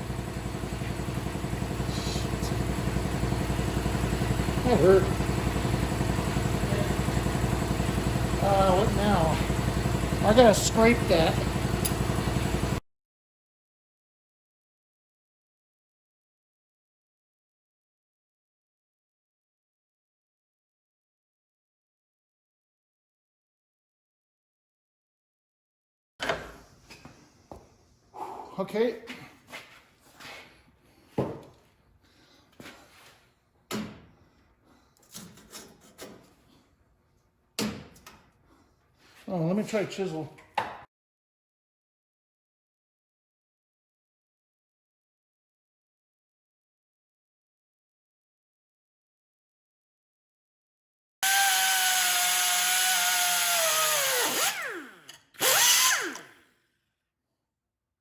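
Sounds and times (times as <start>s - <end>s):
power tool whining: 0.0s - 12.8s, 51.2s - 56.5s.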